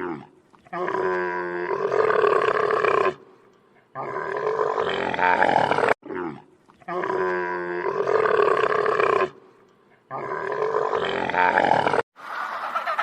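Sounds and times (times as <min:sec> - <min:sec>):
big cat roaring: 0:04.0 - 0:09.4, 0:10.1 - 0:12.0.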